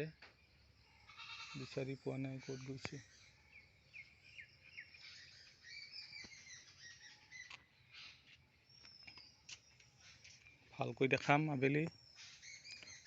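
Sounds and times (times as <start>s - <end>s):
birds chirping: 0.0s - 13.0s.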